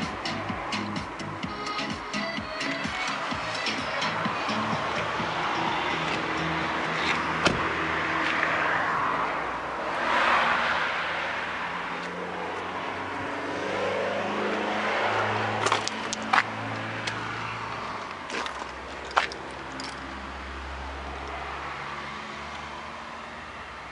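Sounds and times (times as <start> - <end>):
motor vehicle running: 2.7 - 8.4, 12.0 - 20.8.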